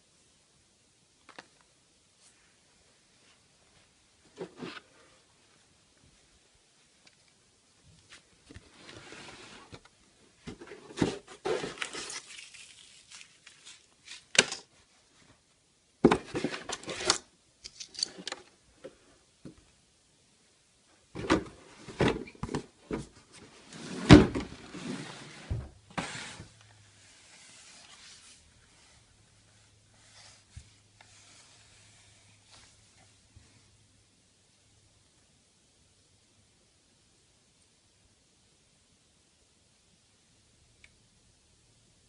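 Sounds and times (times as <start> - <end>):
packaging rustling: 10.9 - 14.7.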